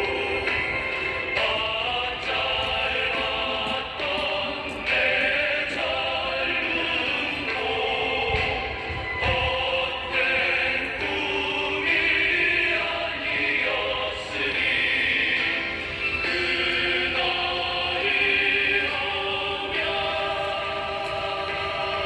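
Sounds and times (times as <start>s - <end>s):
voices singing long notes: 0.0s - 22.0s.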